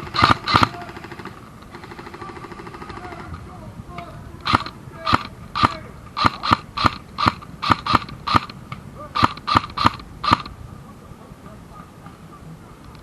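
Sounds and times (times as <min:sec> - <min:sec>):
airsoft gun shots: 0:00.0 - 0:03.4, 0:04.4 - 0:08.6, 0:09.2 - 0:10.5.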